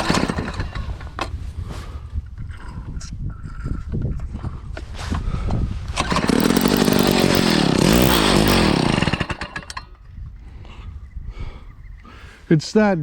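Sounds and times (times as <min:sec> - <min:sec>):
ice auger engine running: 0:00.0 - 0:01.1, 0:06.0 - 0:09.9.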